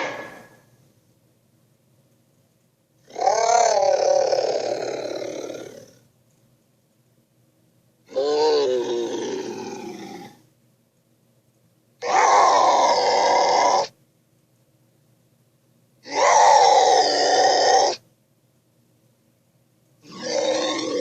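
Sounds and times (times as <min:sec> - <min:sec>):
dinosaur screech: 0:00.0 - 0:00.6, 0:03.1 - 0:06.0, 0:08.1 - 0:10.4, 0:12.0 - 0:13.9, 0:16.0 - 0:18.0, 0:20.0 - 0:21.0.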